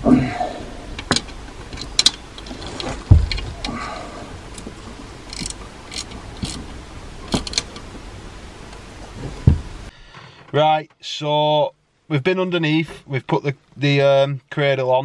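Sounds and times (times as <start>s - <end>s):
heavy low thump: 3.0s - 3.8s, 9.1s - 9.9s.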